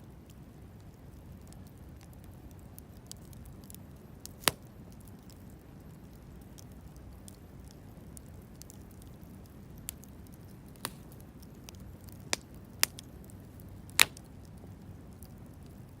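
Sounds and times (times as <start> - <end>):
campfire burning with crackle: 0.0 - 16.0
burning wood popping: 0.3 - 16.0.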